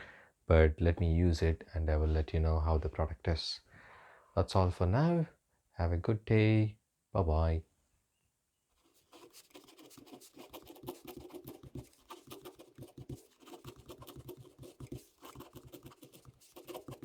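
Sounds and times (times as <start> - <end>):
faint scratching and clicking: 8.8 - 17.0.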